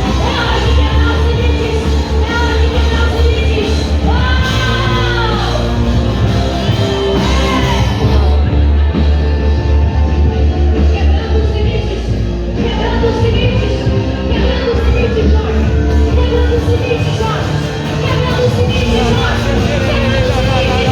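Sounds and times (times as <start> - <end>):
voices singing: 0.0 - 9.5, 10.1 - 20.9
worship band playing: 0.0 - 11.0, 15.5 - 20.9.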